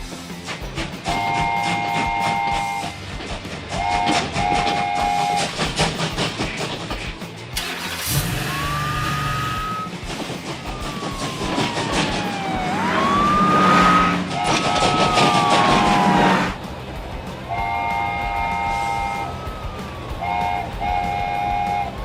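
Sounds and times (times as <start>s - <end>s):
train toot: 0.0s - 7.0s, 7.6s - 22.0s
wheels clicking on track: 0.0s - 22.0s
train whistle: 1.0s - 3.0s, 3.7s - 5.7s, 8.1s - 10.0s, 12.7s - 16.6s, 17.5s - 19.5s, 20.1s - 22.0s.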